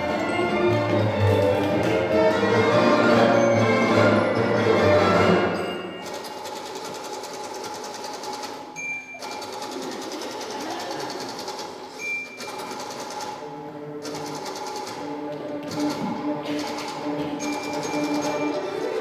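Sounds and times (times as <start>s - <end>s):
orchestral music: 0.0s - 6.1s, 15.0s - 19.0s
typewriter bell ding: 5.5s - 6.8s, 8.8s - 9.7s, 17.4s - 18.6s
typewriter clattering: 6.0s - 8.6s, 14.0s - 15.0s, 15.6s - 18.6s.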